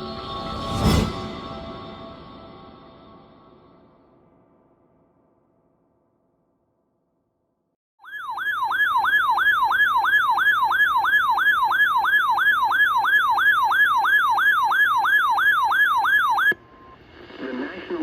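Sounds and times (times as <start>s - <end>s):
electronic yelp siren: 8.0s - 16.6s.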